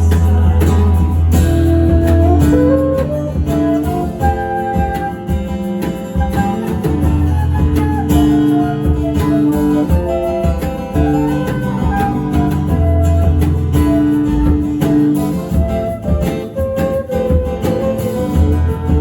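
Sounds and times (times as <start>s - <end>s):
bass line: 0.0s - 4.0s
strummed guitar: 0.0s - 19.0s.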